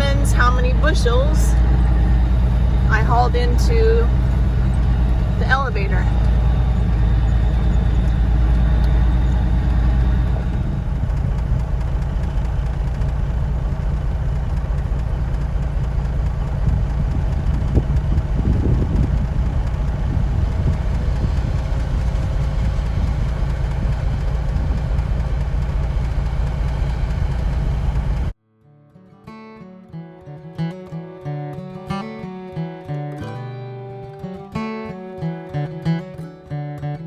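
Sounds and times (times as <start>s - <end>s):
truck engine running: 0.0s - 28.4s.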